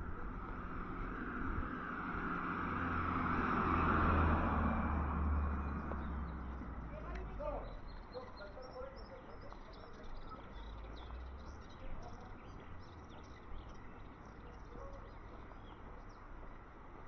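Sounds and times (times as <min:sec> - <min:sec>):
small birds chirping: 0:05.4 - 0:17.0.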